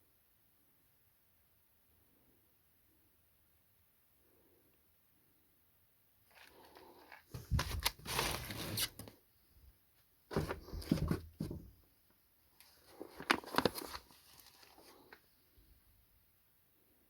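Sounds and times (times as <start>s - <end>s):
packaging rustling and crinkling: 6.3s - 9.1s, 12.6s - 15.2s.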